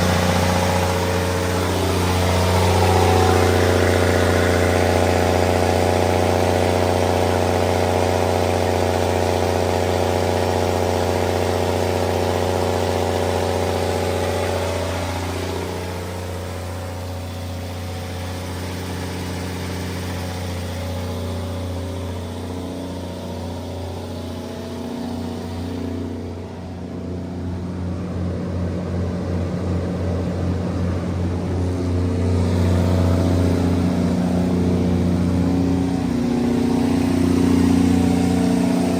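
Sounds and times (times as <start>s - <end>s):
diesel generator running: 0.0s - 38.9s.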